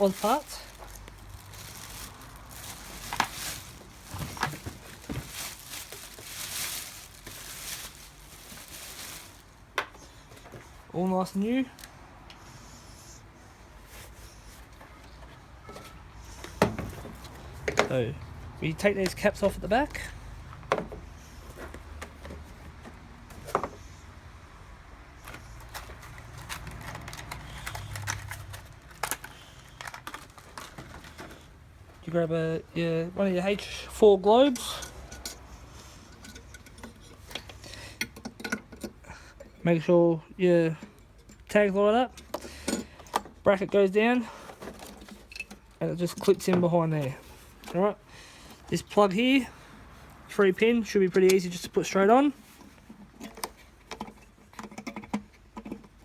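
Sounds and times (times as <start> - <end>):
plastic packaging crinkling: 0.0 - 9.8, 25.6 - 31.4.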